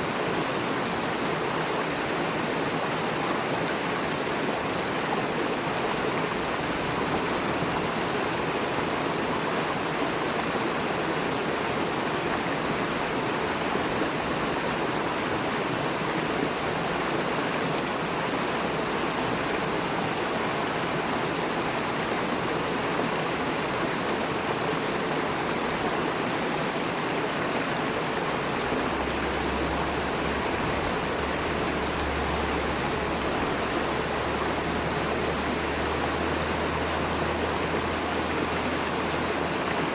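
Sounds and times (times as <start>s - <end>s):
river rushing over rocks: 0.0s - 39.9s.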